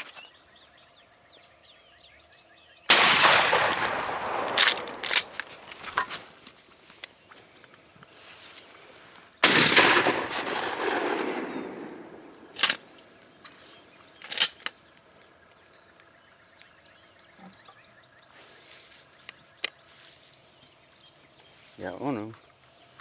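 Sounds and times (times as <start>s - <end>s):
shotgun shot: 2.9s - 5.3s, 9.4s - 12.9s.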